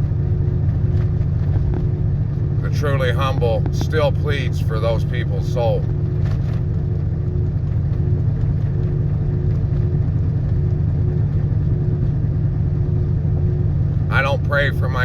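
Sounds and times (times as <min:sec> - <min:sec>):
car engine rumble: 0:00.0 - 0:15.0
faint hum: 0:00.0 - 0:15.0.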